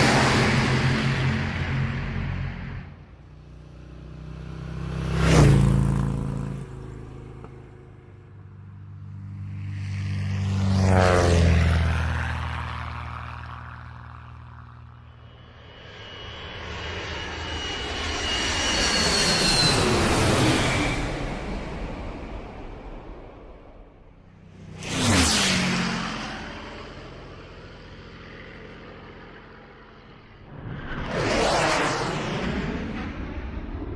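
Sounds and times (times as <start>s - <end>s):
engine passing by: 0.0s - 33.9s
high whine: 30.2s - 33.6s.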